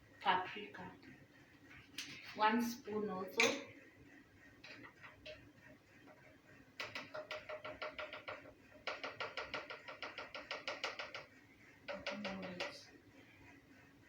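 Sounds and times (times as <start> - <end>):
spoon tapping against a pot: 6.8 - 11.3, 11.9 - 12.9.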